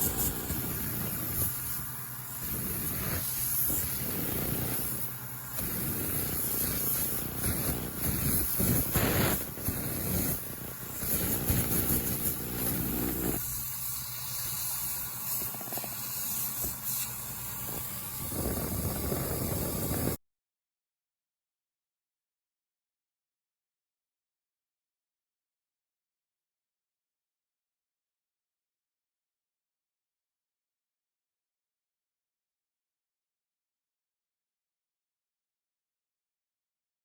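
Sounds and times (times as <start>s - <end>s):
airbrush hissing: 0.0s - 20.2s.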